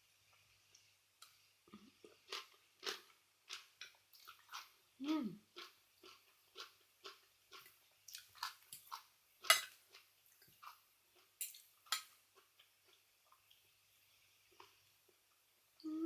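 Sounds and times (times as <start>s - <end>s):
person chewing wetly: 1.7s - 4.8s, 5.5s - 13.6s.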